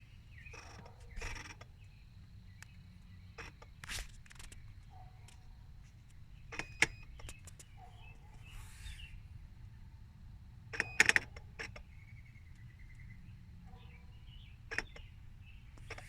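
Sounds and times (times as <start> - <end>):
mechanical clicking from car: 6.5 - 8.0, 10.7 - 12.8, 13.8 - 16.0.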